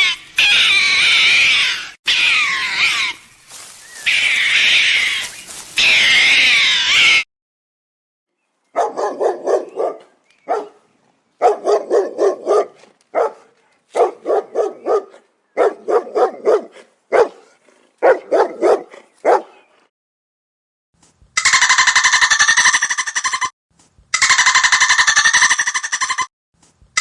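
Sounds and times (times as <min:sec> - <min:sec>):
dog barking: 0:08.8 - 0:10.8, 0:11.4 - 0:19.7.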